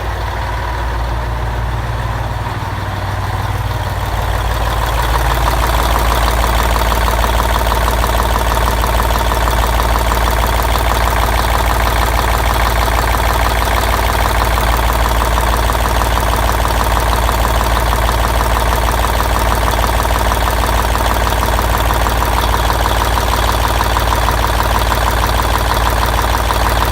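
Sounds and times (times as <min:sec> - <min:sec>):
diesel engine idling with knock: 0:00.0 - 0:26.9.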